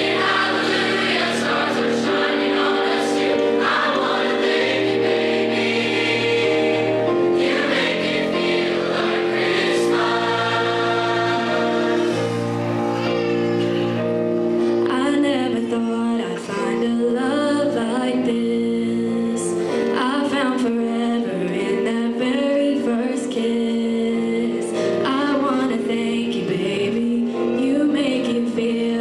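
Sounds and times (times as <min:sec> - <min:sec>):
choir singing: 0:00.0 - 0:14.5
accompanying chords: 0:00.0 - 0:29.0.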